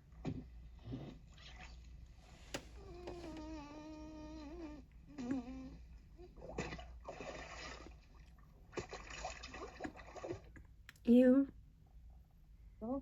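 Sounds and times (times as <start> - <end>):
bubbling splashing water: 6.4 - 10.6.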